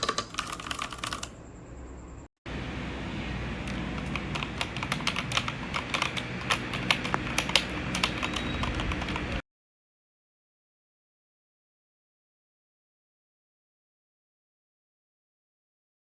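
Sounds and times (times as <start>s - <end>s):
mechanical keyboard typing: 0.0s - 1.4s, 3.7s - 9.4s
low background hum: 0.0s - 9.4s.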